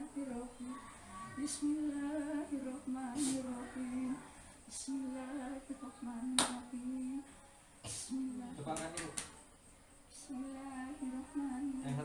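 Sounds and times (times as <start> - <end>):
sharp hissing or slapping noises: 3.2 - 3.5.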